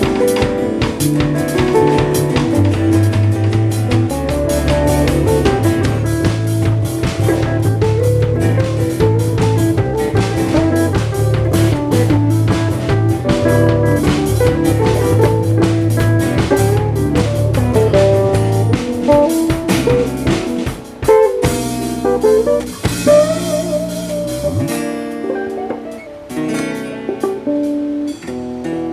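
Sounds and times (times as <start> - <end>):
drum kit beat: 0.0 - 28.9
guitar playing: 0.0 - 28.9.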